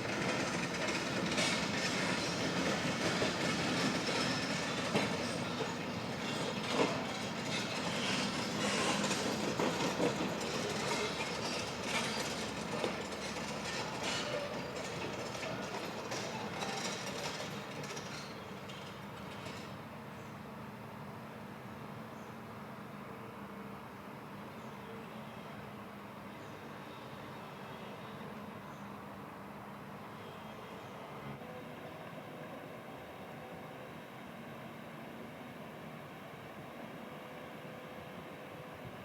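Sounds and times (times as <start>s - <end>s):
heavy vehicle rattling rumble: 0.0s - 19.8s.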